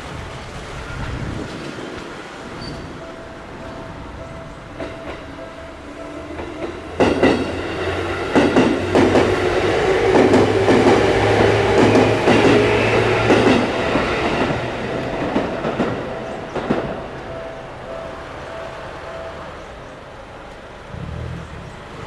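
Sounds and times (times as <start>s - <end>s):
crossing warning bell: 0.3s - 20.9s
train wheels clacking over rail joints: 6.3s - 17.1s.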